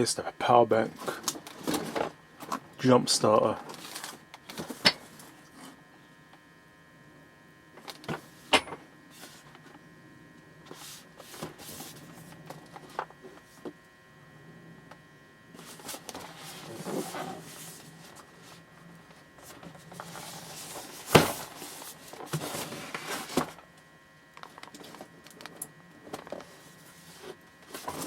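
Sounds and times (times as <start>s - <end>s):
faint electrical hum: 0.0s - 28.0s
packaging clicks taps and rustles: 24.4s - 26.5s.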